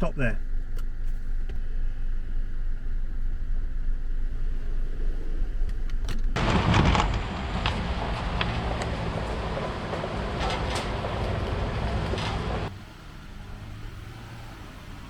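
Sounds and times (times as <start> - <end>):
engine idling: 6.4 - 12.7.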